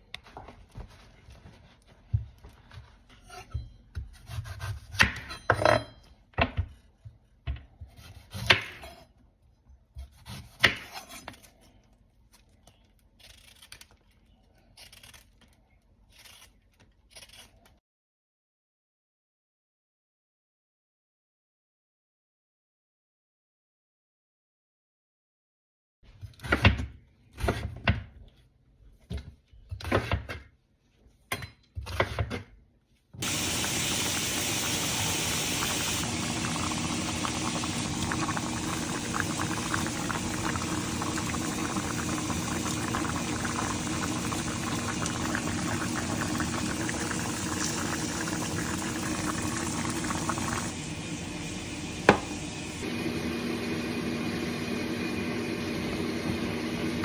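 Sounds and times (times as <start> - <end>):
pot of liquid bubbling: 33.2 - 53.2.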